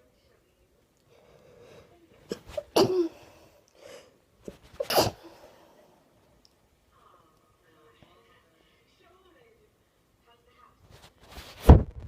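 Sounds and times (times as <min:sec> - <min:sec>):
person sneezing: 0:02.3 - 0:03.5, 0:04.5 - 0:05.5.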